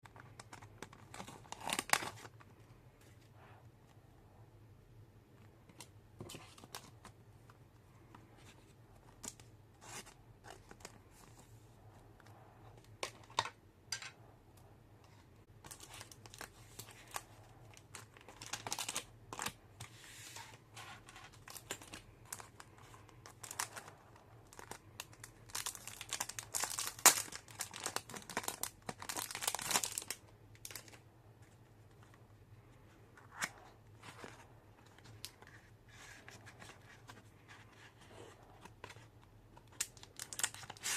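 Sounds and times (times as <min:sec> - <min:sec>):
packaging crinkling: 0:21.0 - 0:31.0, 0:38.6 - 0:40.9.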